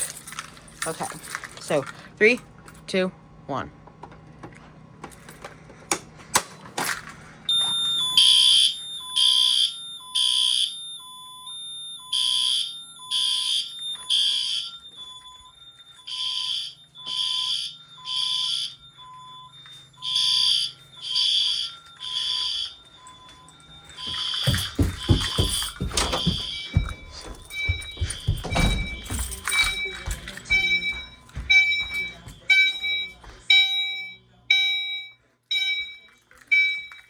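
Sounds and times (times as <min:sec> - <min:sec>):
fire alarm horn blasts: 0:07.5 - 0:37.0
electronic beep pulsing: 0:24.0 - 0:36.9.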